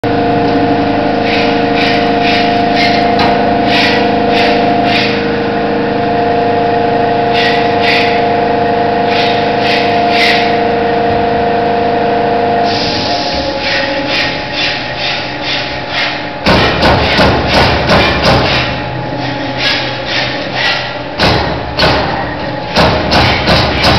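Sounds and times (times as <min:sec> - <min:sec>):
machine hum: 0:00.0 - 0:23.9
sharp punch press strokes: 0:12.7 - 0:18.8, 0:19.6 - 0:23.9.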